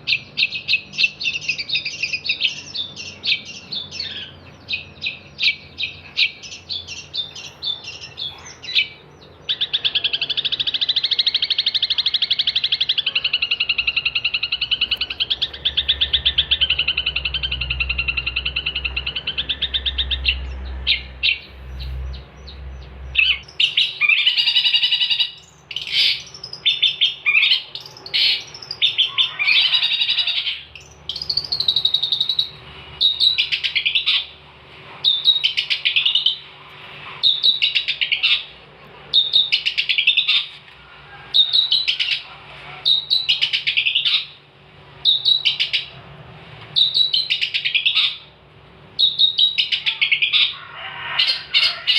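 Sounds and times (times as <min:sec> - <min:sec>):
shrike singing: 0:00.0 - 0:34.4, 0:37.2 - 0:46.0, 0:46.8 - 0:51.9.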